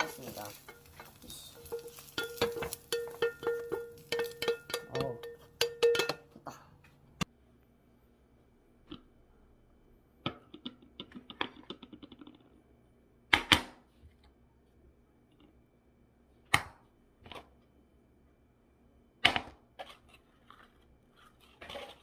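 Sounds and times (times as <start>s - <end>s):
kitchen utensils clattering: 0.0s - 6.3s.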